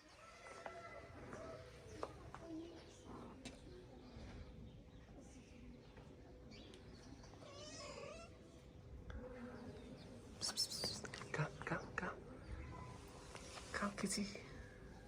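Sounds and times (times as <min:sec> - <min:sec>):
faint cat meow: 0:07.4 - 0:08.4.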